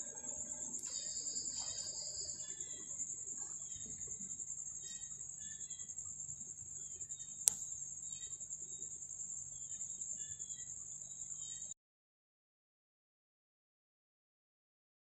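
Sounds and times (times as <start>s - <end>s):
faint bird chirps: 0.0s - 11.8s
insects trilling: 0.0s - 11.8s
sharp click: 7.4s - 7.7s.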